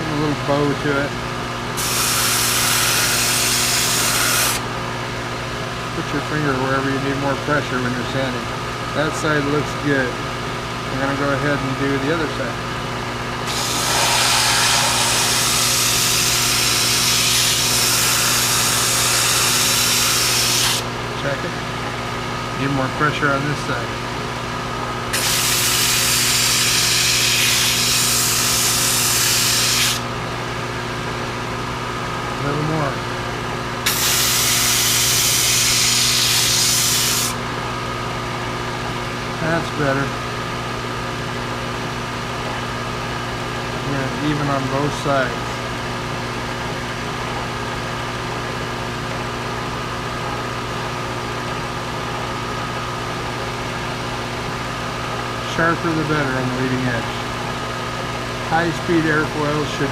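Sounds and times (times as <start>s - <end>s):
belt sander motor humming: 1.8s - 4.7s, 13.4s - 20.9s
sanding hiss: 13.5s - 18.7s.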